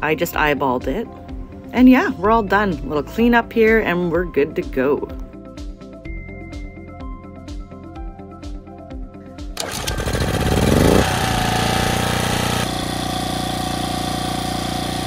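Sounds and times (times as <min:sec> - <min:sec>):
background music with a beat: 0:00.4 - 0:09.6
generator engine running: 0:09.6 - 0:15.0.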